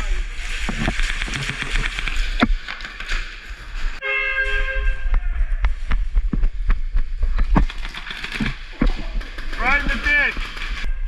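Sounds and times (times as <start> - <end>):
horn blast: 4.0 - 5.4.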